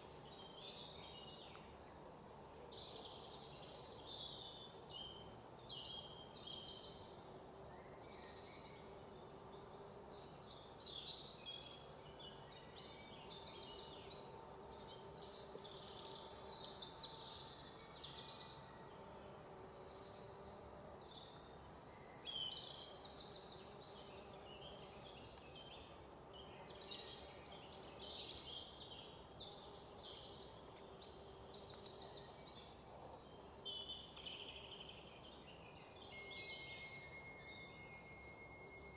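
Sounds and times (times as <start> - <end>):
faint background hiss: 0.0 - 38.9
birds calling and singing: 21.2 - 38.9.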